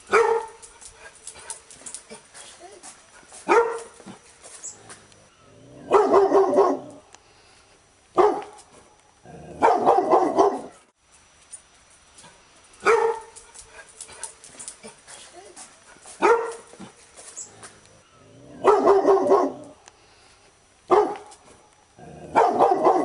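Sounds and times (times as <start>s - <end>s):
dog barking: 0.1s - 0.6s, 3.4s - 4.2s, 5.8s - 7.0s, 8.2s - 8.6s, 9.6s - 10.8s, 12.8s - 13.4s, 16.2s - 16.8s, 18.6s - 19.8s, 20.9s - 21.4s, 22.3s - 23.0s.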